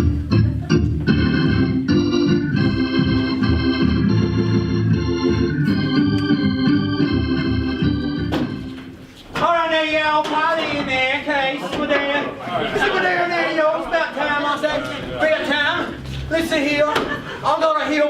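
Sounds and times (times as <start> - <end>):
organ playing chords: 0.0 - 9.2.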